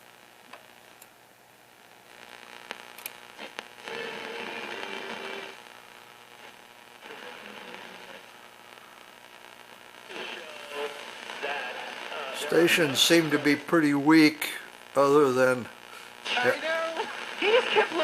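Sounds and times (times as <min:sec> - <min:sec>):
radio static hiss: 0:00.0 - 0:18.0
sharp clicks: 0:02.9 - 0:03.2.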